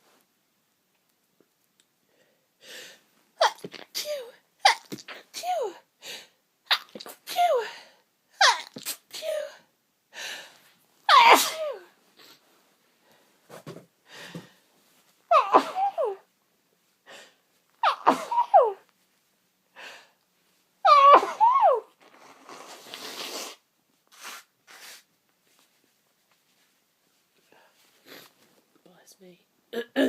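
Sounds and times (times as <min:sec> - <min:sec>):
quiet breaths: 0:02.0 - 0:03.2, 0:09.4 - 0:10.8, 0:11.9 - 0:15.1, 0:16.9 - 0:17.7, 0:19.6 - 0:20.6, 0:26.5 - 0:29.5
person sneezing: 0:03.4 - 0:05.8, 0:08.4 - 0:09.6, 0:11.1 - 0:11.9, 0:15.4 - 0:16.2, 0:17.8 - 0:18.8.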